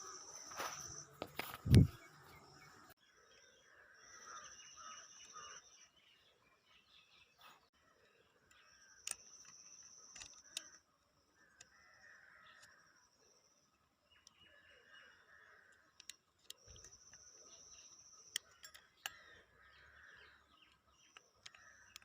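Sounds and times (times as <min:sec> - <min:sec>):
insect high steady trill: 0:00.0 - 0:03.0
birds chirping: 0:00.0 - 0:22.0
sharp clicks: 0:08.5 - 0:10.8, 0:20.6 - 0:22.0.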